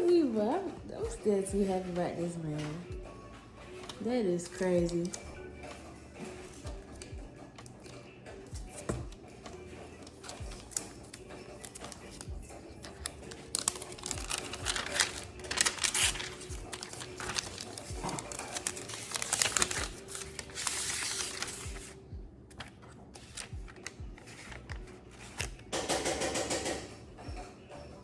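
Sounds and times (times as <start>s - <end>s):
background music with steady beat: 0.0s - 28.0s
packaging crinkling and rustling: 10.1s - 25.6s.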